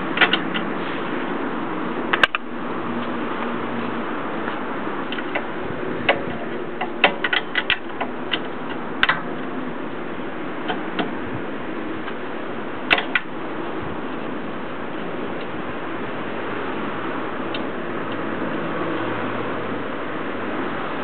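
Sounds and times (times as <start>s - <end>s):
steady background hiss: 0.0s - 21.0s.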